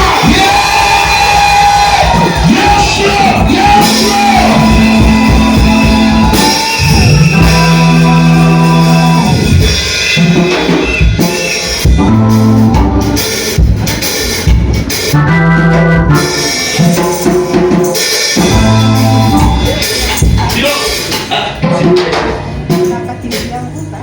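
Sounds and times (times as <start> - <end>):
people singing: 0.0 - 9.6
people shouting: 0.0 - 9.8
drums: 0.0 - 24.0
keyboard or organ: 0.0 - 24.0.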